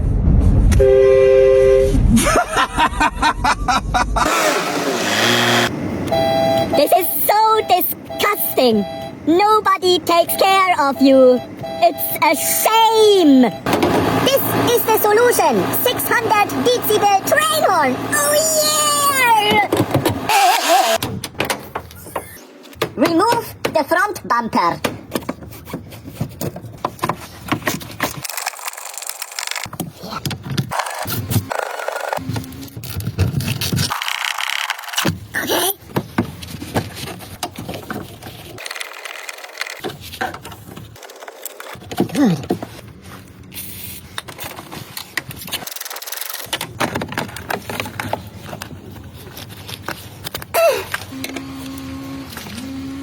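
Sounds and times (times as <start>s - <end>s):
tools clicking and knocking on car parts: 21.0s - 22.0s, 46.4s - 48.8s.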